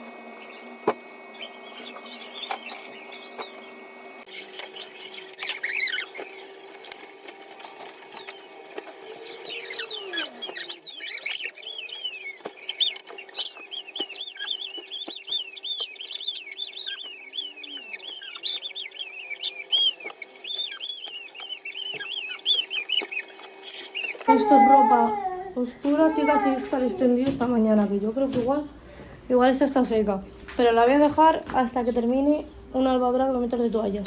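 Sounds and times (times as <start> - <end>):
rapid high-pitched chirping: 0.4 - 6.5, 7.6 - 24.2.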